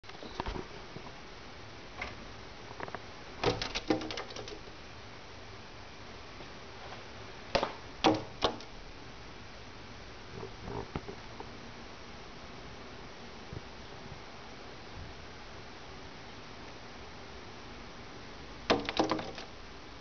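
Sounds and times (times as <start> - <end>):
bird tapping on window glass: 3.4 - 4.7, 7.6 - 8.7, 18.7 - 19.5.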